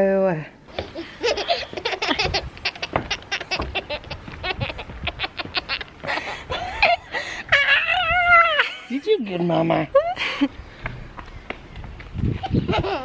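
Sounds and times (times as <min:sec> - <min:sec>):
baby giggling: 0:00.8 - 0:06.1, 0:12.4 - 0:13.0.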